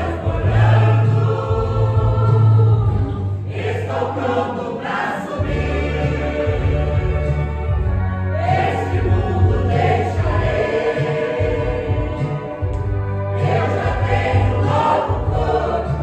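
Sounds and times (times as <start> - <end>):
sustained bass accompaniment: 0.0 - 4.7, 5.4 - 16.0
choir singing gospel: 0.0 - 16.0.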